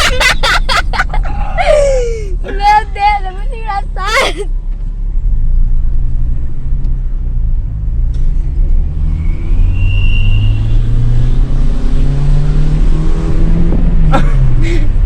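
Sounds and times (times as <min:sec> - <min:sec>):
car engine accelerating: 0:00.0 - 0:15.0
thin high whistle: 0:09.2 - 0:10.9.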